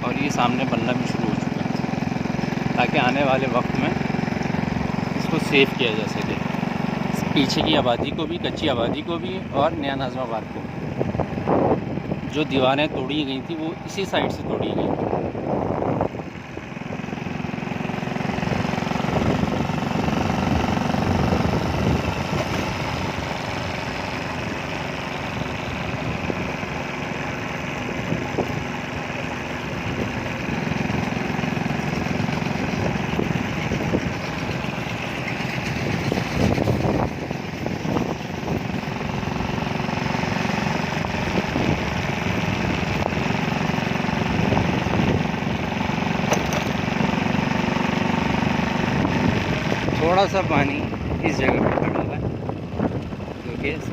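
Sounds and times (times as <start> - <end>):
engine running: 0.0 - 53.9.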